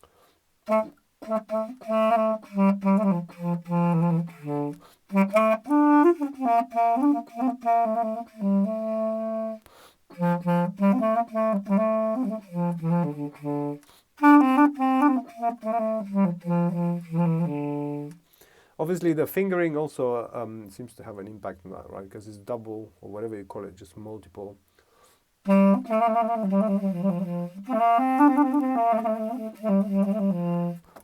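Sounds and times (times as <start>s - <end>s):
wailing low clarinet notes: 0.6s - 18.2s, 25.5s - 30.9s.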